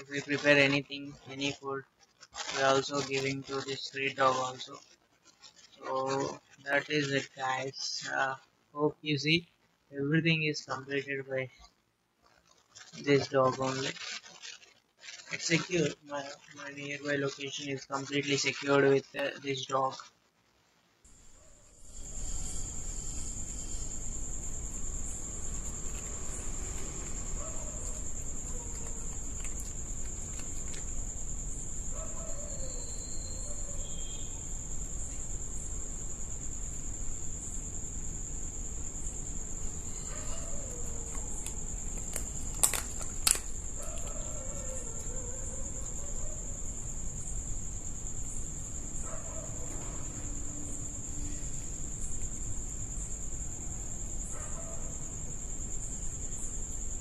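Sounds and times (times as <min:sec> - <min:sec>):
crickets chirring: 0:00.0 - 0:57.0
faint rising and falling calls: 0:32.3 - 0:34.5
sharp clicks: 0:41.0 - 0:44.2.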